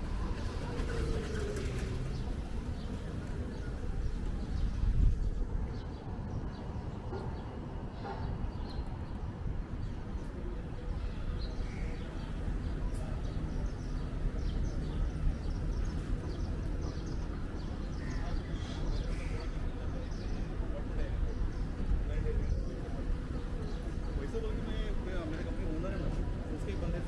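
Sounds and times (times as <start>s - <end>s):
wind buffeting microphone: 0.0s - 11.5s, 20.4s - 24.2s.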